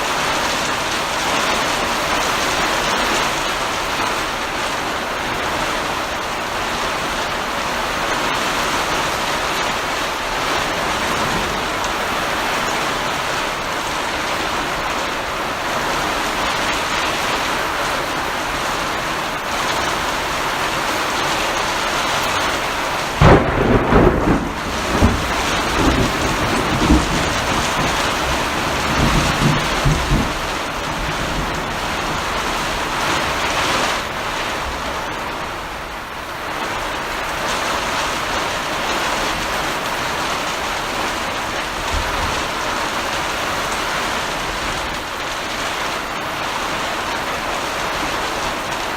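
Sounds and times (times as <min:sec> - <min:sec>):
heavy rain: 0:00.0 - 0:48.9
thunder clap rumbling: 0:08.1 - 0:14.9, 0:23.1 - 0:34.7.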